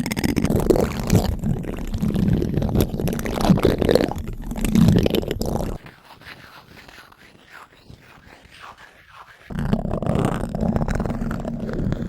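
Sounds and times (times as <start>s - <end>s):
spoon scraping on microphone: 0.1s - 12.0s.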